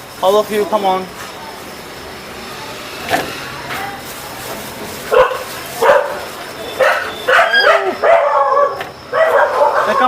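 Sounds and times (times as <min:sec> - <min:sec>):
dogs barking: 0:05.1 - 0:10.0.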